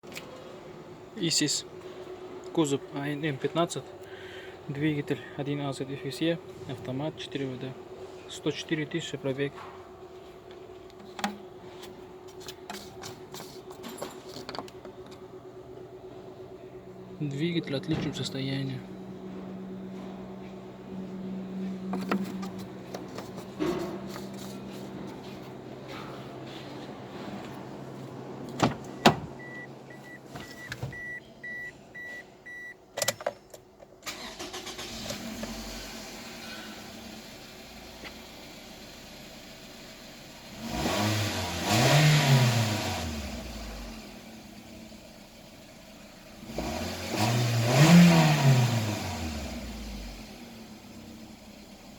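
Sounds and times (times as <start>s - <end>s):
car engine idling: 0.2s - 31.6s, 34.1s - 40.6s, 42.7s - 46.6s, 49.2s - 51.9s
car warning chime beeping: 28.9s - 33.2s.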